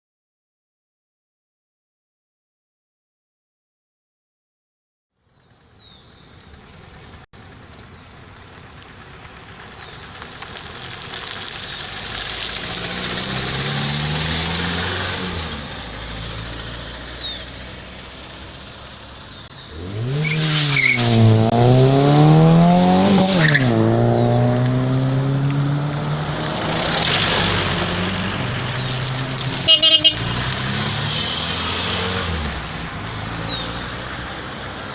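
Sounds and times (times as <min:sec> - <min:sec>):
cars driving past: 0:06.1 - 0:34.9
car engine revving hard: 0:12.1 - 0:18.8, 0:19.6 - 0:34.8.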